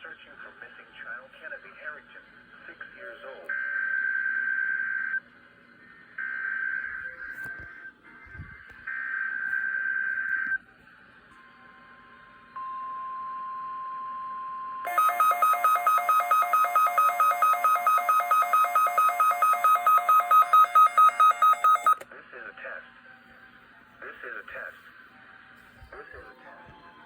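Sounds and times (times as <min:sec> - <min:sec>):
rapid electronic alarm beeping: 0:14.8 - 0:22.0
steady warning alarm tone: 0:14.8 - 0:22.0.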